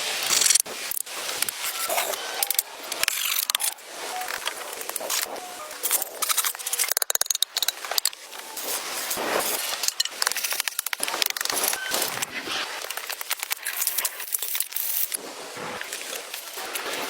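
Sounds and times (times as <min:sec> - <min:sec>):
crackling and scraping of wood: 0:00.1 - 0:17.0
sharp clicks: 0:01.4 - 0:08.2.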